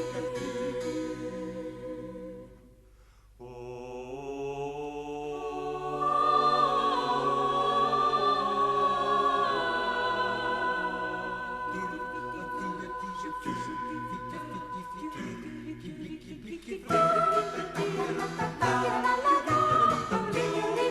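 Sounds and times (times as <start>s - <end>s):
high sustained melody: 11.2s - 15.6s.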